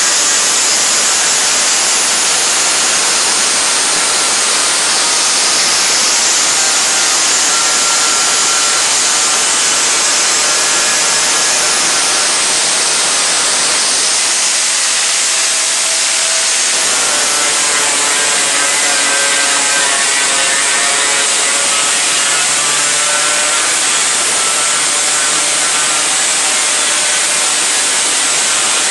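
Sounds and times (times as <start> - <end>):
power tool on metal roof: 0.0 - 28.9.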